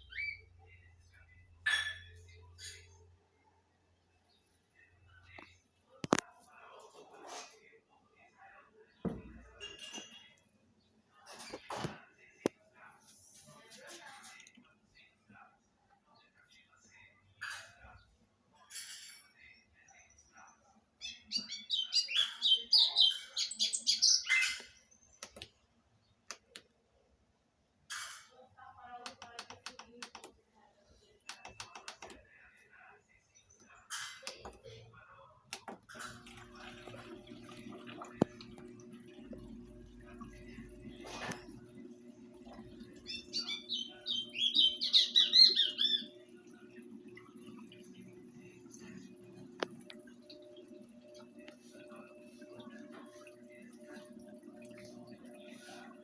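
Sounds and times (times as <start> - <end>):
songbird chirping and trilling: 0.0 - 2.7, 19.6 - 25.4, 41.8 - 46.8
sharp clicks: 29.1 - 30.4, 31.3 - 32.2.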